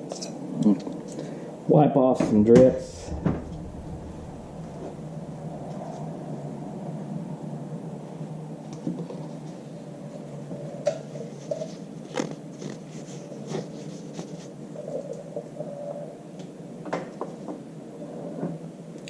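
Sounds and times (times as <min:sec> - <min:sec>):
steady low hum: 0:02.4 - 0:07.9.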